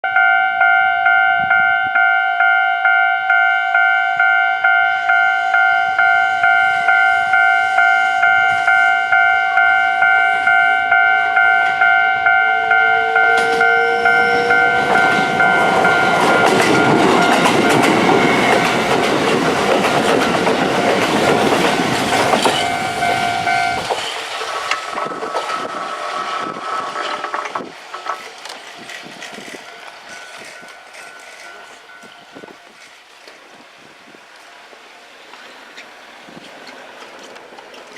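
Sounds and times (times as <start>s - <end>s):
level crossing bell clanging: 0.0s - 19.1s, 22.4s - 24.0s, 29.5s - 32.7s
train wheels clattering on rails: 13.2s - 33.5s, 35.3s - 37.9s.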